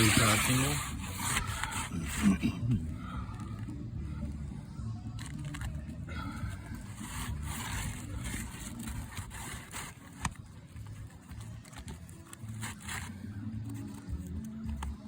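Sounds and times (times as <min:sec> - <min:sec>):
roof shingles being scraped: 0:00.0 - 0:02.4, 0:06.8 - 0:10.3.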